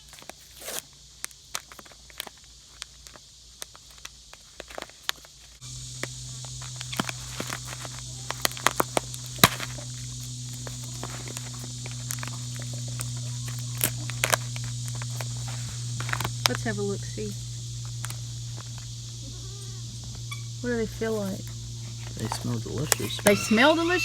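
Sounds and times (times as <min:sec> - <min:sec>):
footsteps crunching on dry ground: 0:04.6 - 0:19.3
low hum: 0:05.6 - 0:24.0.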